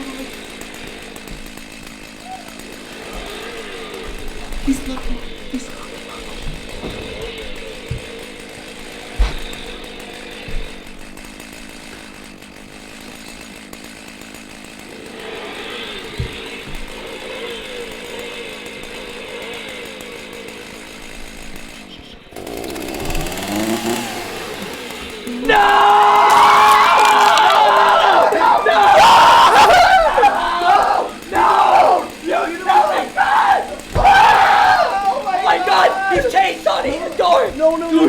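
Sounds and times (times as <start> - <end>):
knocks: 0.0 - 13.9, 15.7 - 17.9
chainsaw running: 0.0 - 38.0.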